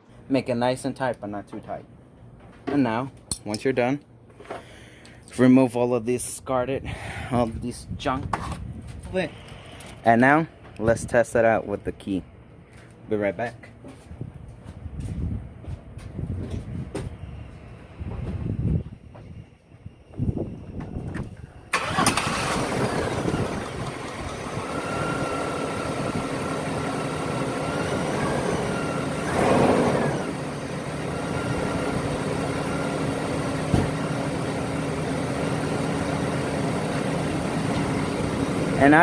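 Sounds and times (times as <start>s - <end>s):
car engine starting and idling: 21.3s - 39.0s.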